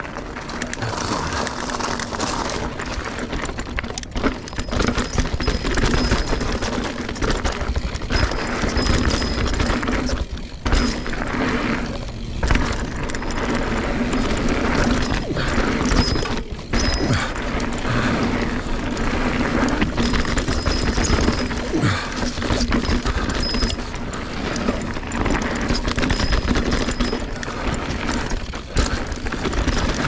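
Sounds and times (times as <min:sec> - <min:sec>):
bike chain and frame rattling: 0:00.0 - 0:30.0
tyres and wind rumbling: 0:00.0 - 0:30.0.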